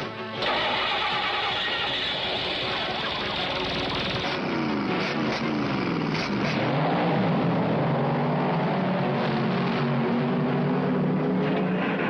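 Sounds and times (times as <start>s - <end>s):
cartoon car engine: 0.3s - 7.8s, 11.4s - 12.0s.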